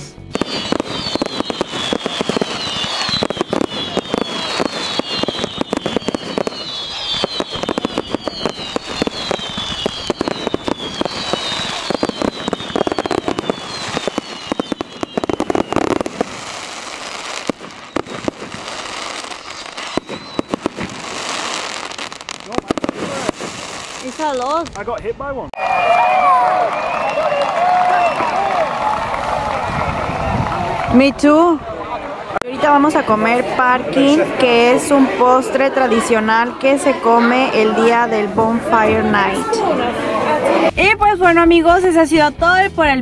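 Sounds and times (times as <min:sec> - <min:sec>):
fireworks crackling and popping: 0:00.0 - 0:25.5
firework bangs: 0:00.3 - 0:25.1
falling firework whistles: 0:00.4 - 0:24.2.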